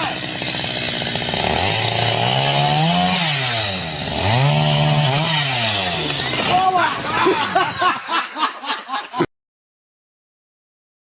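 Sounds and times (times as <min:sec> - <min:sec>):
small engine revving: 0:00.0 - 0:07.6.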